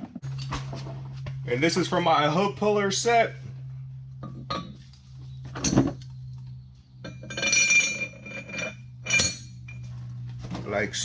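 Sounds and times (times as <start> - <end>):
metal parts clinking and clanking: 4.2 - 4.8, 5.5 - 6.1, 7.0 - 9.9.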